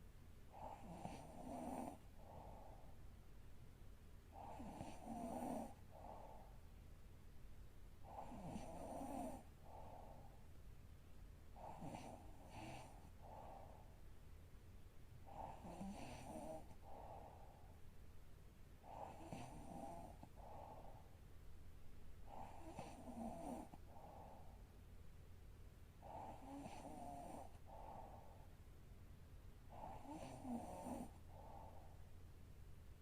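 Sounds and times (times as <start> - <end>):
woman snoring softly: 0.5 - 3.0, 4.3 - 6.6, 8.0 - 10.4, 11.5 - 14.0, 15.2 - 17.8, 18.8 - 21.2, 22.2 - 24.6, 26.0 - 28.5, 29.6 - 32.1.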